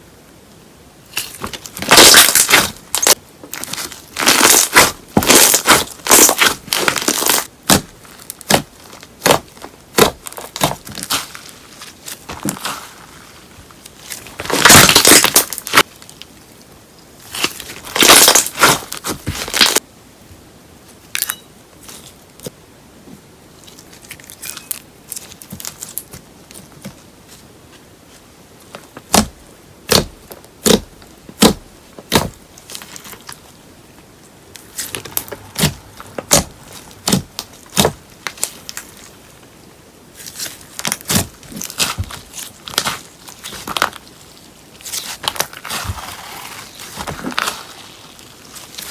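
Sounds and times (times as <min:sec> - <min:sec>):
slime crackling by hand: 0:01.2 - 0:16.3, 0:17.2 - 0:19.8, 0:34.6 - 0:39.4, 0:40.1 - 0:48.9.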